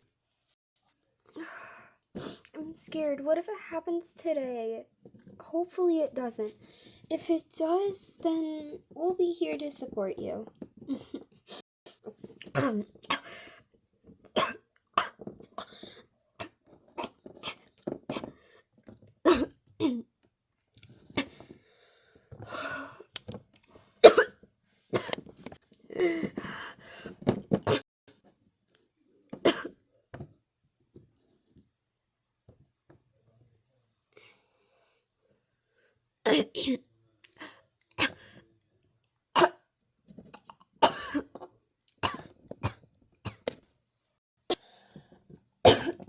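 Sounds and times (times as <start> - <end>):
person coughing harshly: 12.5 - 13.3, 14.4 - 15.8, 19.3 - 20.0, 24.0 - 24.4, 29.4 - 29.8, 40.8 - 41.4, 45.7 - 46.0
person clearing throat: 29.4 - 29.8, 45.7 - 46.0.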